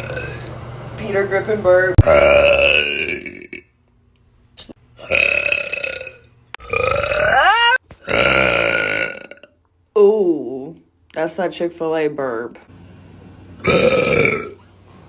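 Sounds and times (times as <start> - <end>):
women burping loudly: 2.0 - 3.6, 5.0 - 9.5, 13.6 - 14.6.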